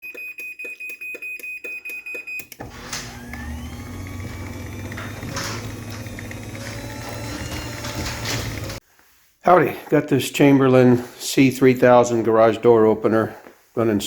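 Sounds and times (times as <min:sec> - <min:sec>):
garage door opener motor humming: 0:02.5 - 0:08.8.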